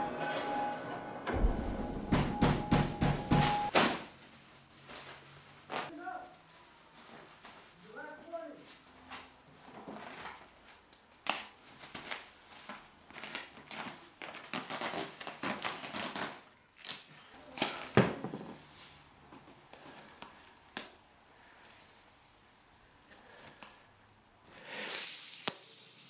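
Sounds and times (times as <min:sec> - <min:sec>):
plastic bag crinkling: 0:11.6 - 0:18.0.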